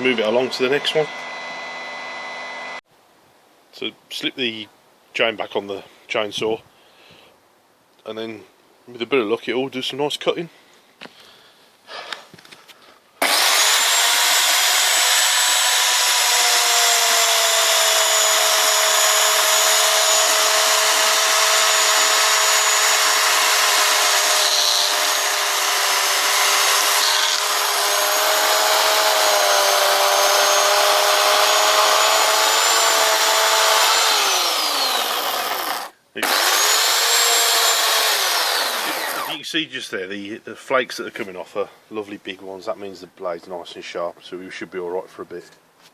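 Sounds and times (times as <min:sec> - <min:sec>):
chainsaw cutting wood: 0:13.2 - 0:39.4.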